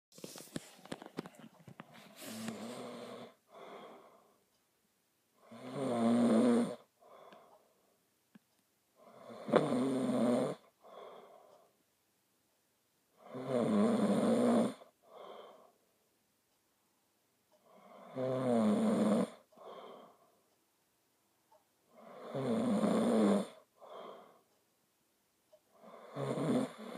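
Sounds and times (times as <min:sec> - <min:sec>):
person snoring: 0:02.1 - 0:04.3, 0:05.4 - 0:07.5, 0:09.0 - 0:11.4, 0:13.2 - 0:15.7, 0:17.7 - 0:20.1, 0:21.9 - 0:24.3, 0:25.8 - 0:26.9.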